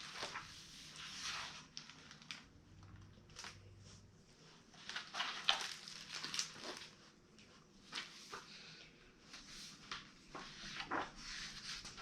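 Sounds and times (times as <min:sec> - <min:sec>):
paper swishes and rustles: 0:00.0 - 0:02.5, 0:09.3 - 0:12.0
book page turning: 0:04.8 - 0:07.0, 0:09.8 - 0:12.0.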